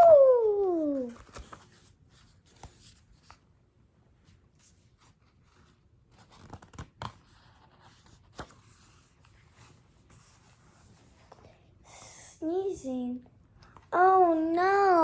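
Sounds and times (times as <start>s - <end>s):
paper rustling and page taps: 5.0s - 9.4s.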